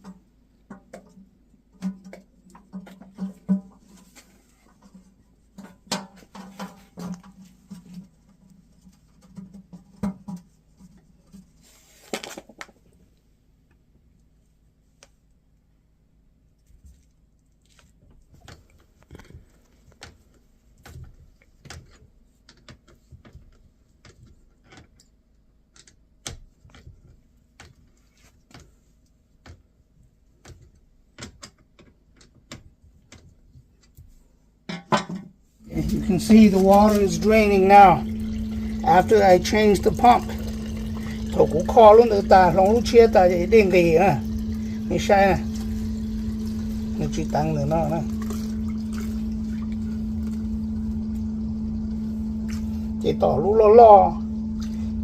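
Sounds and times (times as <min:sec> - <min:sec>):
light clicks and knocks of parts: 0:16.6 - 0:34.2
low hum: 0:35.6 - 0:55.0.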